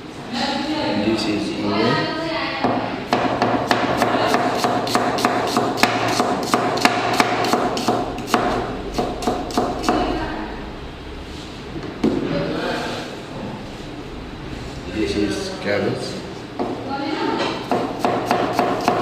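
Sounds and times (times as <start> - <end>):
steady hum: 0.0 - 19.0
knife chopping on cutting board: 3.1 - 10.0, 17.4 - 19.0.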